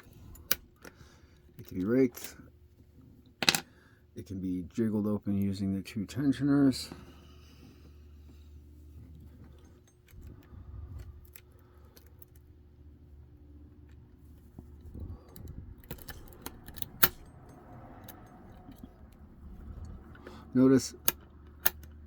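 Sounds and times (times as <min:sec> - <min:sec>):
lock picking clicks and scrapes: 0:00.0 - 0:02.4, 0:09.2 - 0:12.6, 0:13.7 - 0:22.0.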